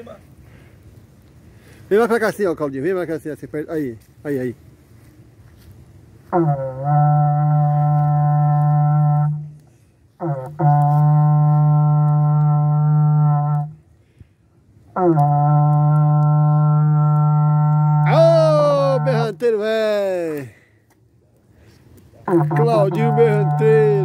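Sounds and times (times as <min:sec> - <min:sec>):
ox-horn blown in long notes: 0:06.2 - 0:13.8, 0:14.9 - 0:19.4, 0:22.2 - 0:24.0.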